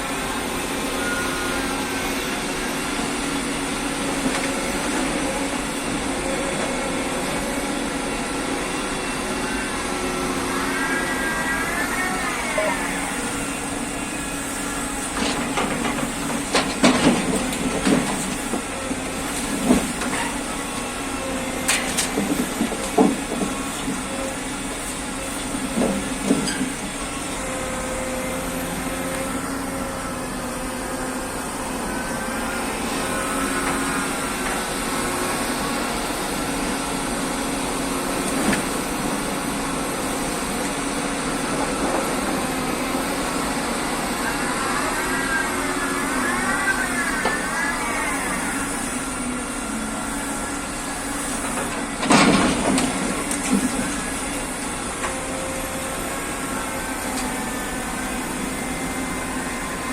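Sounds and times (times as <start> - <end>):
crane engine running: 0.0 - 59.9
knocks and clanks: 15.2 - 18.6, 21.7 - 24.0, 52.0 - 53.8.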